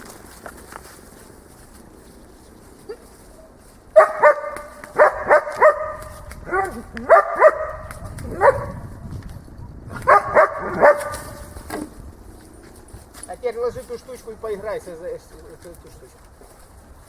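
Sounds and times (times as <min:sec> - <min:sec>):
dog barking: 0:04.0 - 0:08.8, 0:09.9 - 0:11.4.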